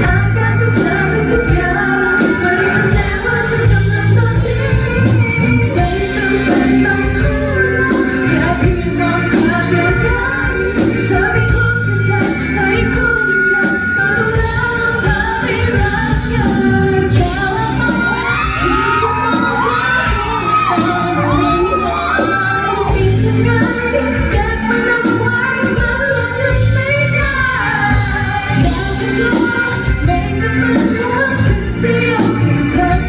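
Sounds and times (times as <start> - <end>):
rock-pop band playing: 0.0 - 33.0
women singing pop song: 0.0 - 33.0
audience whooping and shouting: 17.8 - 23.2.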